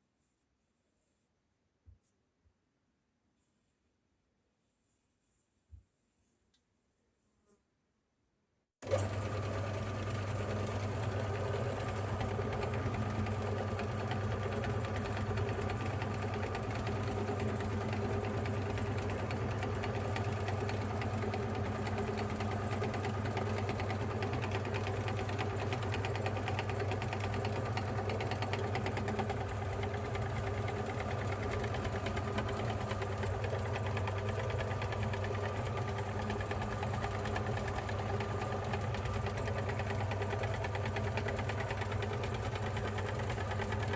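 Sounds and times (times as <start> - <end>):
electric meat grinder motor humming: 8.8 - 15.8.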